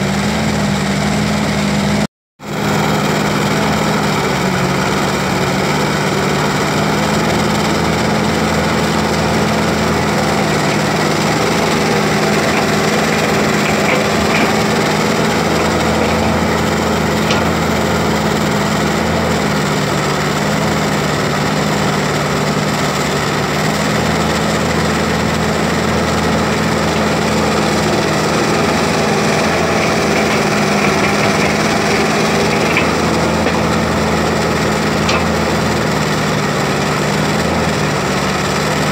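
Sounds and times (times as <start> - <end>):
excavator diesel engine running: 0.0 - 38.9
faint clicks and knocks: 10.4 - 17.7, 28.4 - 33.9.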